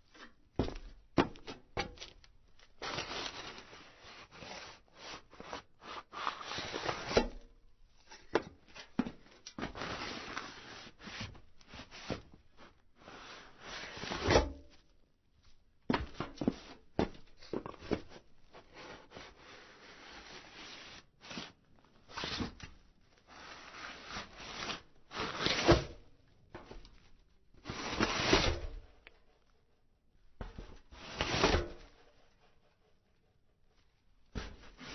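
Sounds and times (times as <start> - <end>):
footsteps on metal roof: 0.5 - 2.2.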